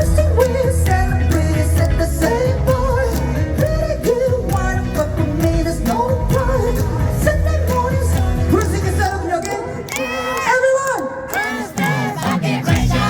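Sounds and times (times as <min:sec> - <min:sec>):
rock band with heavy bass and drums: 0:00.0 - 0:09.1
man singing: 0:00.0 - 0:13.0.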